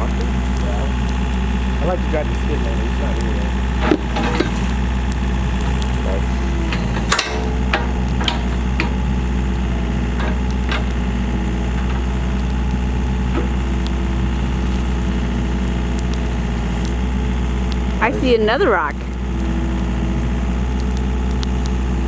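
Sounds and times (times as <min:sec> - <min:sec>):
excavator diesel engine running: 0:00.0 - 0:22.0
knocks and clanks from digging: 0:03.8 - 0:04.8, 0:06.4 - 0:09.2.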